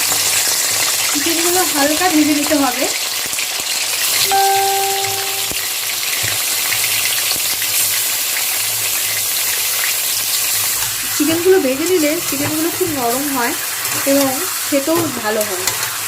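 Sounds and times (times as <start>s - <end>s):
chicken sizzling in oil: 0.0s - 16.0s
beep tone: 4.3s - 5.6s.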